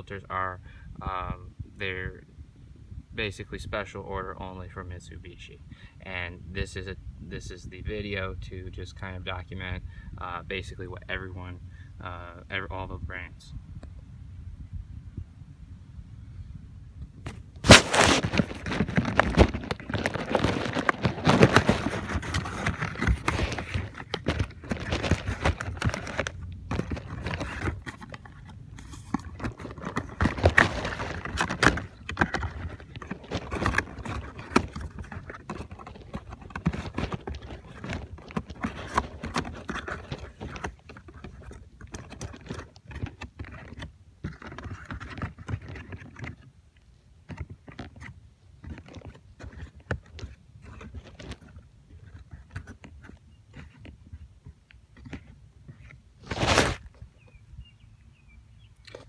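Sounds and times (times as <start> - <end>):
packaging rustling and scraping: 17.3 - 46.5, 47.2 - 57.4.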